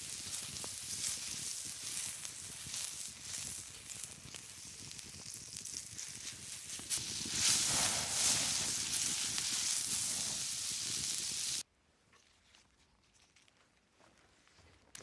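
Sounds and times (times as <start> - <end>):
campfire hissing and crackling: 0.0 - 11.7.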